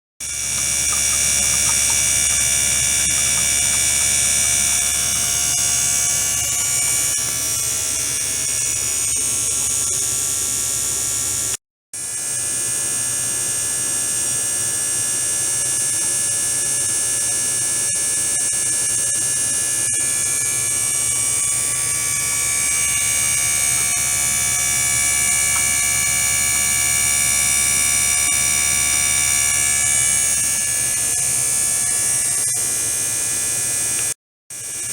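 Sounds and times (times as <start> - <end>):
high-pitched whining tones: 0.2 - 8.8
electric hum of pump: 0.2 - 34.9.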